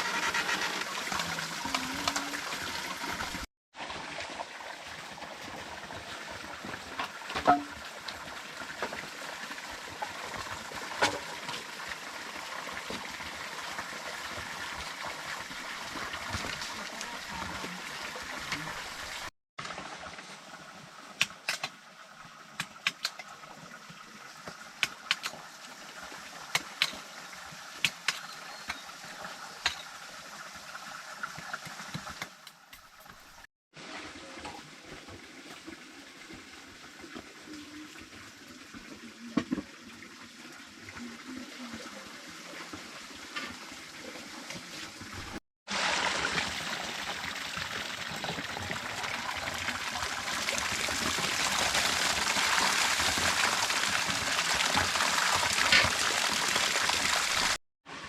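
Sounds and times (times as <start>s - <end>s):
running water rushing: 0.0s - 21.2s, 33.0s - 58.0s.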